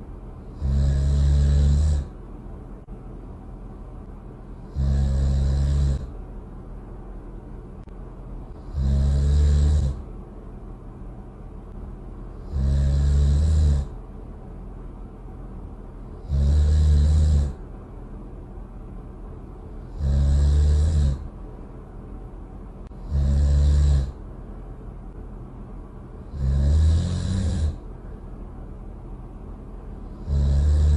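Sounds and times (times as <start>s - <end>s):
loud snoring: 0.4s - 2.2s, 4.6s - 6.1s, 8.5s - 10.1s, 12.3s - 14.0s, 16.2s - 17.6s, 19.8s - 21.3s, 22.9s - 24.2s, 26.2s - 27.8s, 30.0s - 30.9s.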